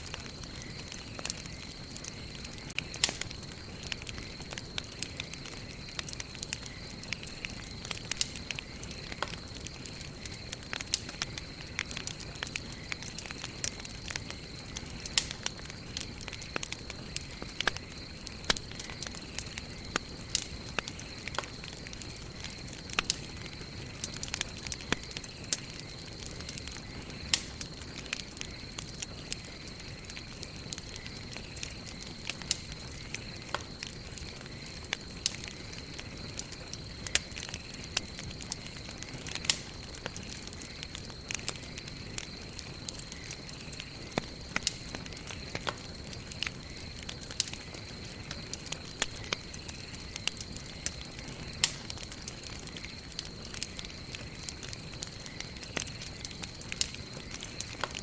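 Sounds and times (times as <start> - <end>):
campfire crackles and pops: 0.0 - 58.0
low hiss of flames: 0.0 - 58.0.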